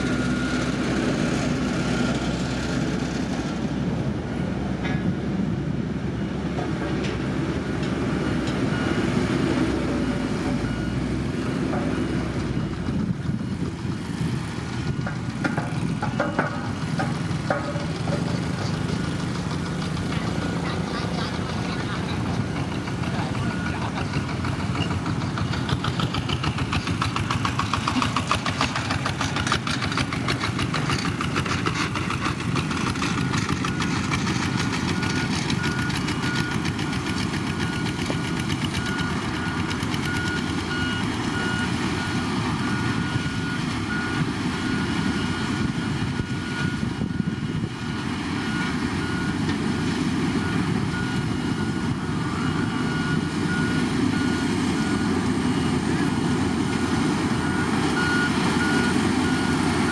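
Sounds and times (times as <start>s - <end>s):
reversing alarm beeping: 0.0s - 2.4s, 7.5s - 12.9s, 20.2s - 30.0s, 30.6s - 49.5s, 50.4s - 59.9s
heavy diesel machinery running: 0.0s - 59.9s.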